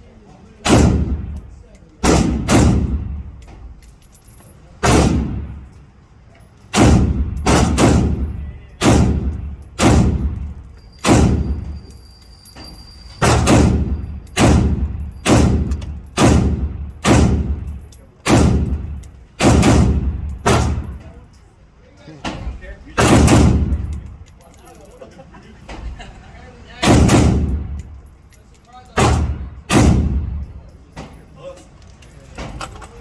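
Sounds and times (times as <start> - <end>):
rifle shots with echo: 0.7 - 1.3, 2.0 - 3.0, 6.8 - 10.4, 18.3 - 21.0.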